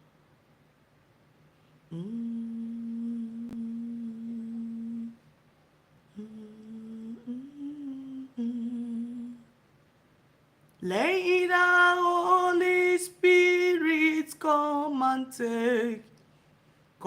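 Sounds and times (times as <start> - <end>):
person humming: 1.9 - 5.2, 6.1 - 9.5.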